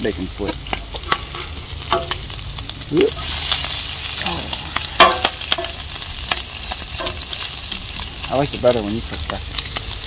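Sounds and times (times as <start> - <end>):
bacon sizzling in a pan: 0.0 - 10.0.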